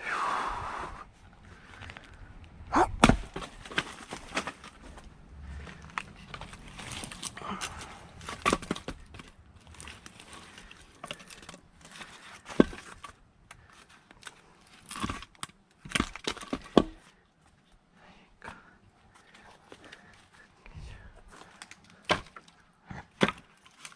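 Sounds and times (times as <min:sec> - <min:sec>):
firewood knocking and clacking: 0:02.9 - 0:13.7, 0:14.9 - 0:17.0
wood debris crackling and rustling: 0:02.9 - 0:17.2, 0:21.2 - 0:23.9.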